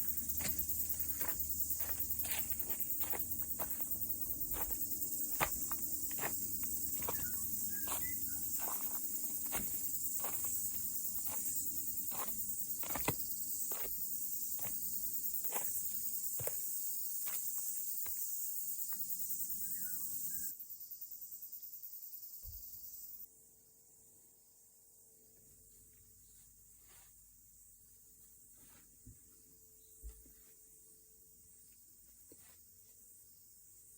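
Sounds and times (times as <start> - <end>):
footsteps walking: 0.0 - 18.2
cicadas buzzing: 0.0 - 23.2.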